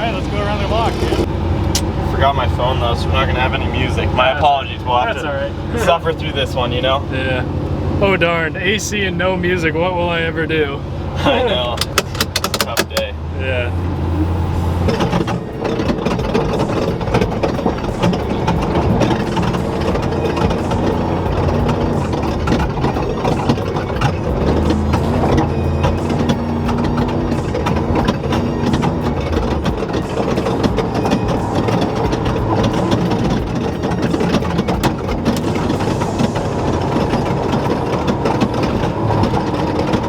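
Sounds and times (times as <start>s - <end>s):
truck engine running under load: 0.0s - 40.0s
knocks and rattles from bumps: 11.8s - 13.1s.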